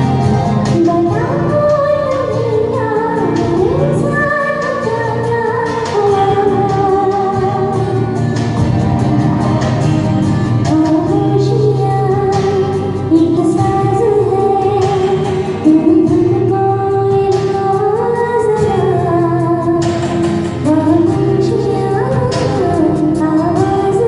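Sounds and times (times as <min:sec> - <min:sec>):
woman singing a slow ballad: 0:00.0 - 0:08.6, 0:10.5 - 0:24.0
instrumental accompaniment: 0:00.0 - 0:24.0.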